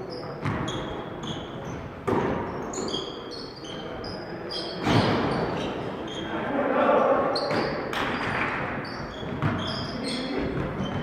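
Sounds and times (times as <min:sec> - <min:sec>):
sneaker squeaks: 0:00.0 - 0:06.4, 0:07.3 - 0:11.0
basketball bouncing on court: 0:00.4 - 0:01.0, 0:09.1 - 0:11.0.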